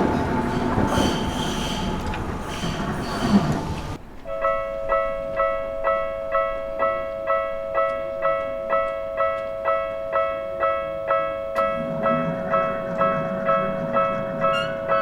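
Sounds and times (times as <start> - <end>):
level-crossing bell dings: 4.3 - 15.0.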